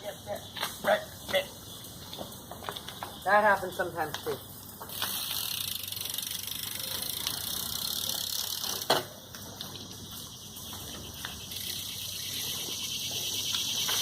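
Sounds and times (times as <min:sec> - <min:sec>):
bike tyres rolling: 0:00.0 - 0:14.0
bike and rider hitting ground: 0:04.7 - 0:12.2.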